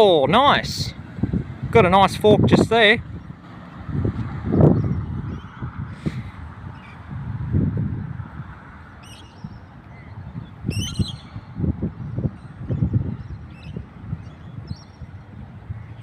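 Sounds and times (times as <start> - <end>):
birds calling: 4.3 - 7.2, 8.0 - 16.0.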